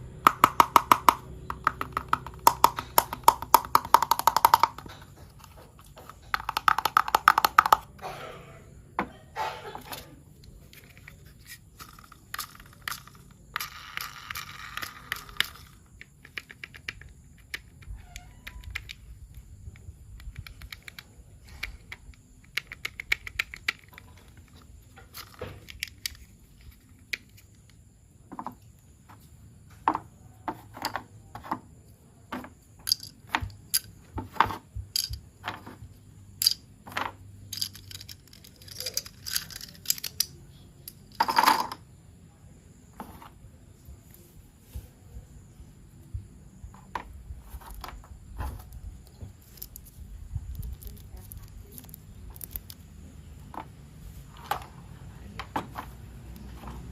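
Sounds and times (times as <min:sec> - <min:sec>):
plastic pieces clicking and tapping: 0:00.2 - 0:08.0, 0:09.9 - 0:28.7, 0:32.3 - 0:41.8, 0:46.8 - 0:53.7.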